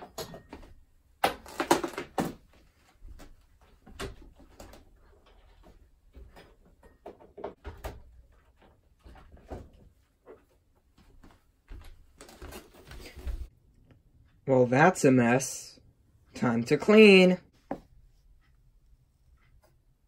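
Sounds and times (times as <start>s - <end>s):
objects knocking and rattling: 0.0s - 9.9s.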